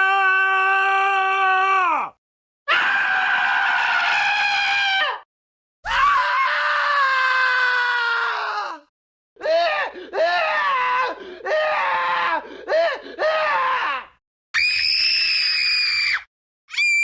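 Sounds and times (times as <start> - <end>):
long high screams: 0.0 - 2.1, 2.7 - 8.9, 13.4 - 17.0.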